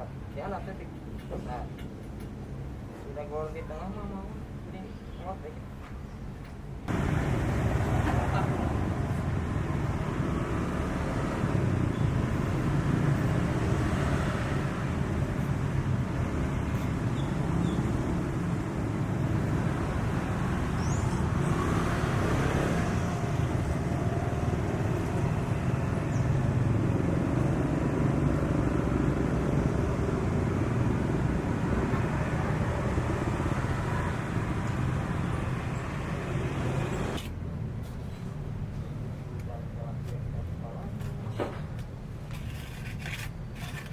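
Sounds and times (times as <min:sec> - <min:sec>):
outdoor noise: 0:00.0 - 0:43.9
engine running: 0:06.9 - 0:37.2.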